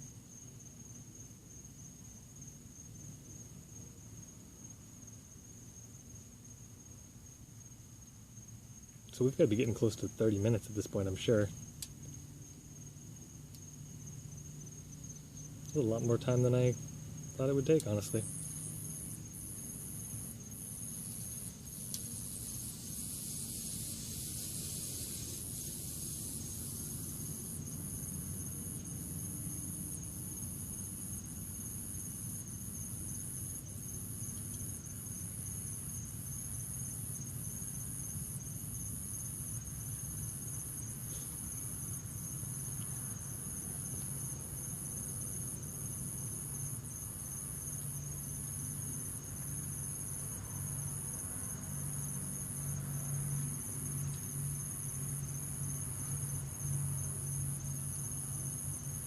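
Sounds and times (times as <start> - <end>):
crickets chirping: 0.0 - 59.0.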